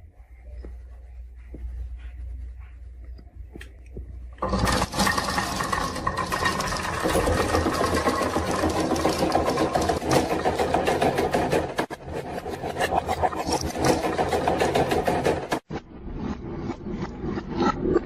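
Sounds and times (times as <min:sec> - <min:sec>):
faint running hum: 0:00.0 - 0:07.9.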